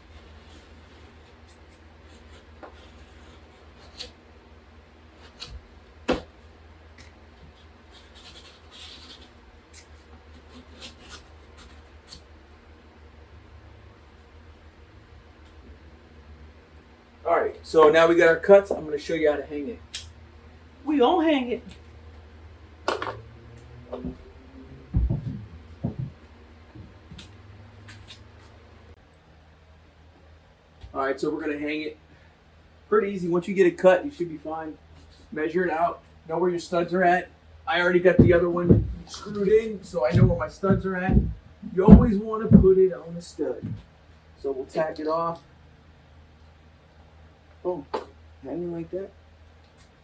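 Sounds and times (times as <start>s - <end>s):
knife scoring drywall paper: 0.0s - 4.3s, 5.1s - 6.3s, 7.4s - 12.7s, 38.1s - 42.8s
low steady hum: 0.0s - 50.0s
knocks and thumps of drywall: 24.9s - 27.0s, 38.1s - 42.9s, 43.6s - 43.9s.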